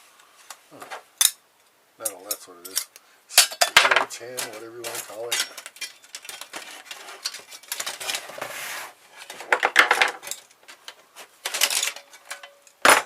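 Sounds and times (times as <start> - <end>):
metal parts clinking and rattling: 2.3 - 8.4, 9.2 - 13.0.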